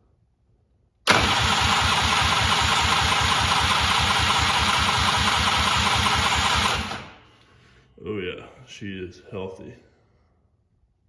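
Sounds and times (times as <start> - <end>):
two-stroke engine cranking: 1.1 - 7.1.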